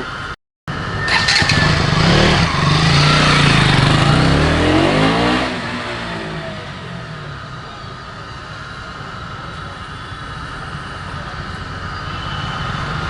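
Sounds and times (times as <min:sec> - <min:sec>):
motorcycle engine accelerating past: 0:00.9 - 0:06.9.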